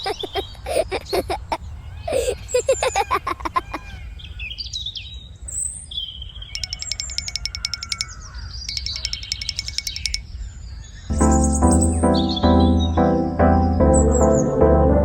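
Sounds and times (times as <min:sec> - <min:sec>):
songbirds chirping: 0:00.0 - 0:14.6
rapid bird trills: 0:06.5 - 0:10.4.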